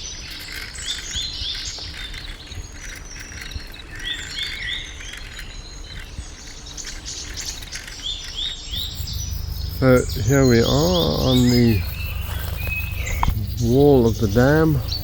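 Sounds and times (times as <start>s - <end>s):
birds chirping: 0.0s - 15.0s
high insect buzz: 8.8s - 15.0s.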